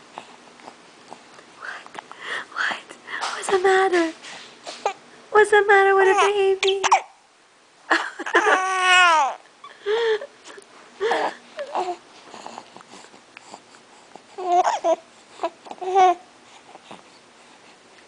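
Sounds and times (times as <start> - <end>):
baby fussing in cooing cries: 8.3 - 9.4, 11.1 - 12.0, 14.3 - 16.3.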